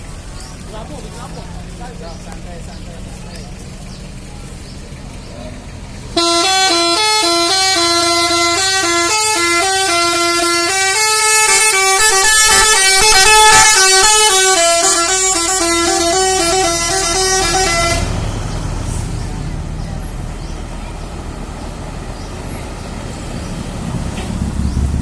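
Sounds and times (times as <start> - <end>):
bus engine running: 0.0 - 25.0
bus horn melody: 6.1 - 19.0.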